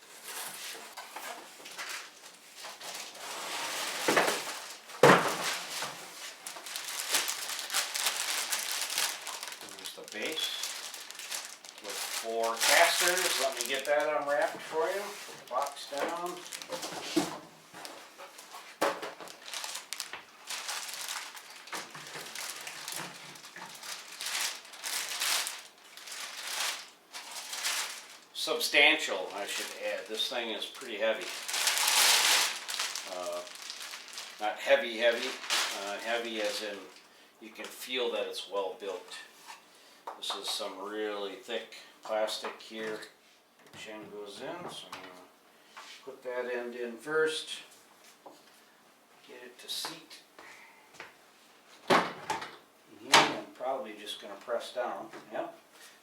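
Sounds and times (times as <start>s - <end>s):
packaging rustling: 0.2s - 37.1s
plastic wrapping crinkling: 0.8s - 38.0s.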